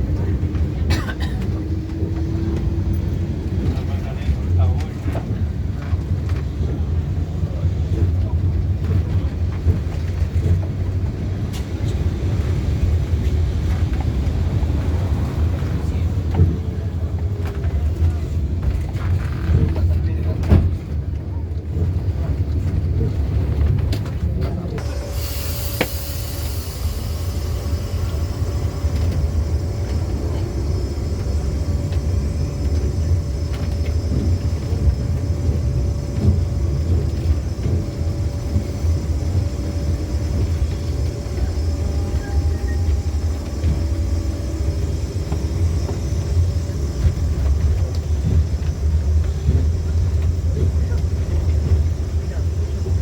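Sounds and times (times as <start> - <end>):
tram rumbling on rails: 0.0 - 53.0.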